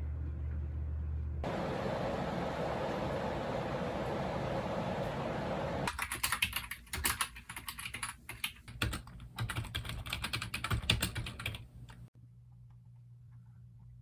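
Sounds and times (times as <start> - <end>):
fast keyboard typing: 5.9 - 11.7.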